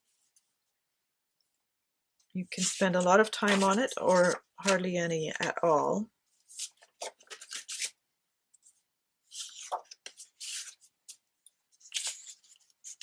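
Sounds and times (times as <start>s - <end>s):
paper rustling and sliding: 2.6s - 4.9s, 9.3s - 13.0s.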